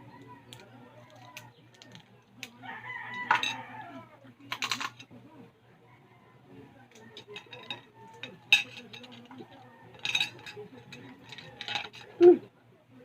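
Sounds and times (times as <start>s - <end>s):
plates and utensils clinking: 3.2s - 3.6s, 4.5s - 5.1s, 6.9s - 12.2s.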